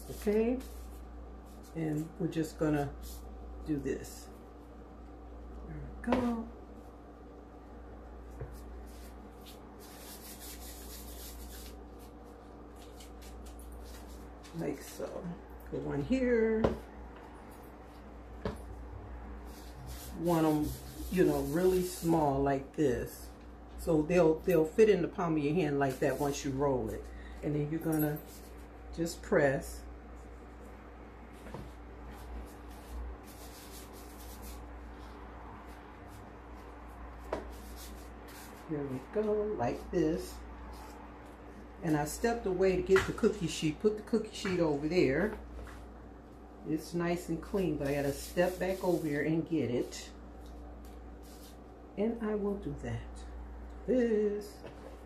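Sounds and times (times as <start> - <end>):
steady low hum: 0.0 - 55.0.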